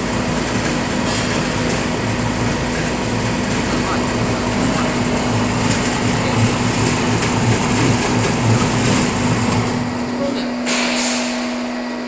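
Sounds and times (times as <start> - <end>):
concrete mixer running: 0.0 - 12.0.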